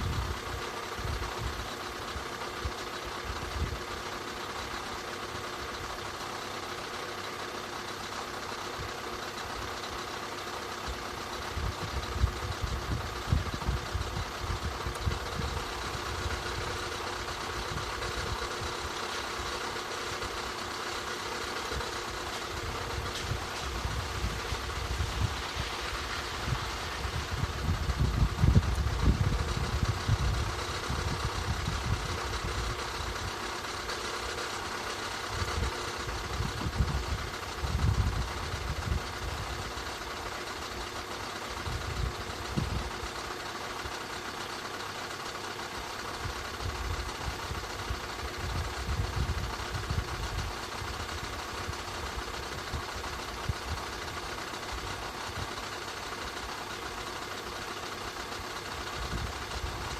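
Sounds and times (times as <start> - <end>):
car engine idling: 0.0 - 59.9
low rumbling: 8.1 - 40.3.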